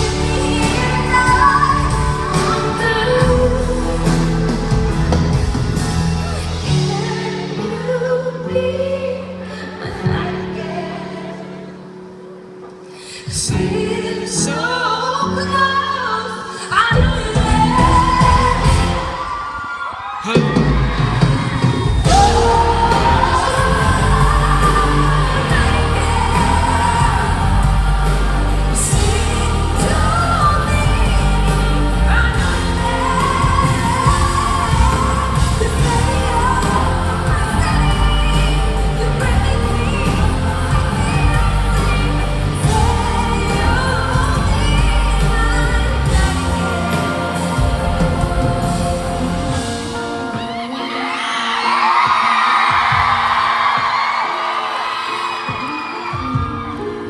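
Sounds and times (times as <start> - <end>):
band with heavy bass: 0.0 - 8.0, 16.9 - 19.4, 20.2 - 50.9
woman singing pop ballad: 0.0 - 11.8, 12.9 - 19.3, 22.0 - 57.0.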